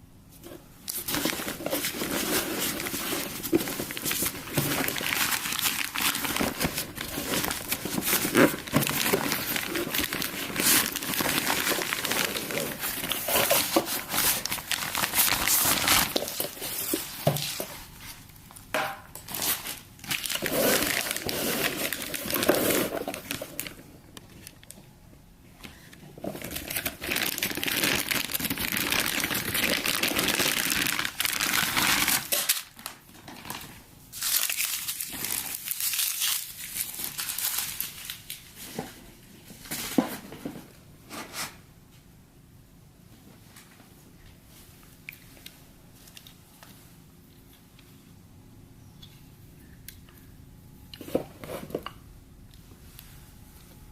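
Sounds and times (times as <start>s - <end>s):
packaging crinkling: 0.9s - 17.8s, 19.2s - 24.8s, 26.2s - 38.7s.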